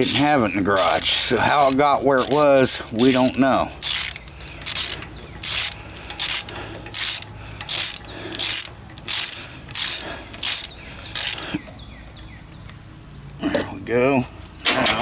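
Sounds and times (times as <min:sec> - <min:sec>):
ratchet wrench rasping: 0:00.0 - 0:11.5.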